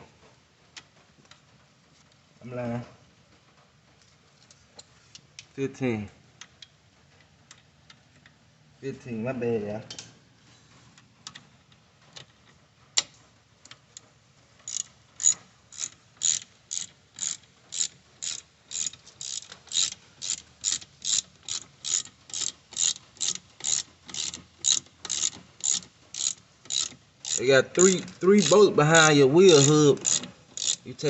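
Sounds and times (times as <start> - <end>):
ratchet wrench clicking: 14.6 - 31.0.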